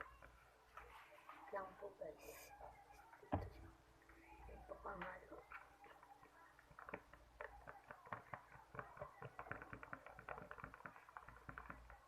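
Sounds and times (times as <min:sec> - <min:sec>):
stirrer tapping container: 0:05.0 - 0:12.0.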